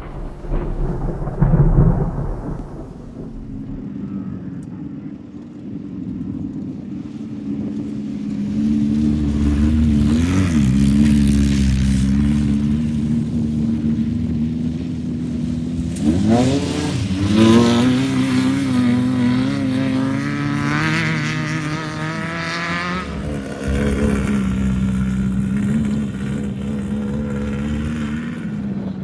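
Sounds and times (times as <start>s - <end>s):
race car engine running: 20.2s - 29.0s.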